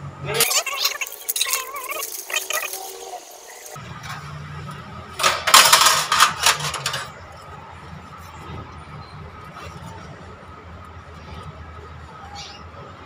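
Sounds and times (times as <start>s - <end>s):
sheet metal parts clattering: 5.2s - 7.2s.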